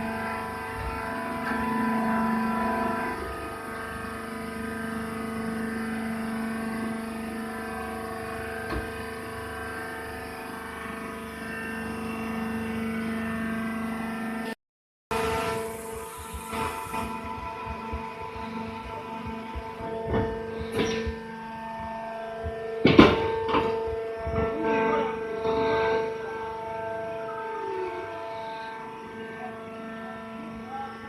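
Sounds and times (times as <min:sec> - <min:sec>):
baler machine humming: 0:00.0 - 0:31.0.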